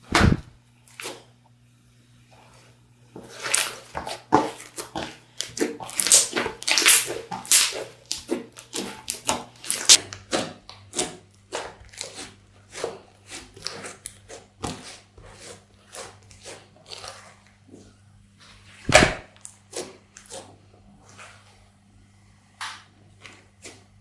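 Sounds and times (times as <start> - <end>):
slime squelching: 3.2 - 21.6.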